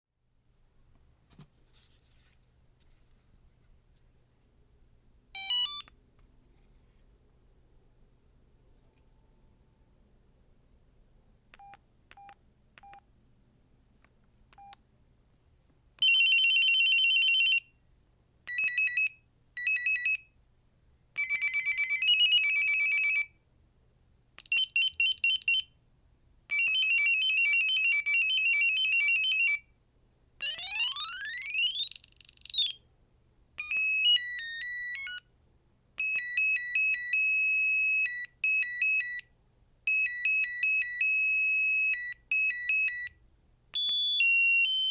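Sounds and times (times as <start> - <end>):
electronic ringtone melodies: 5.4 - 5.9, 21.2 - 23.3, 26.5 - 29.6, 30.4 - 32.8, 33.6 - 35.2, 43.8 - 44.9.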